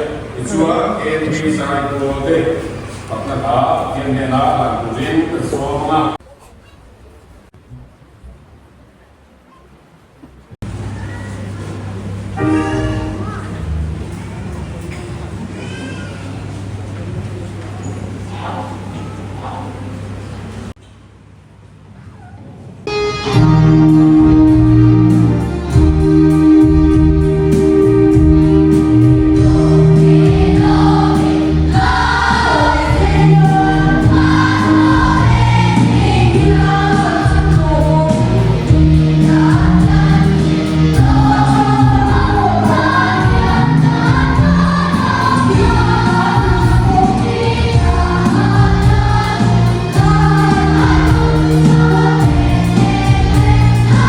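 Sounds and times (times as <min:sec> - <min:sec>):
sustained instrumental chords: 0:12.0 - 0:14.5, 0:22.9 - 0:54.0
gospel choir singing: 0:22.9 - 0:54.0.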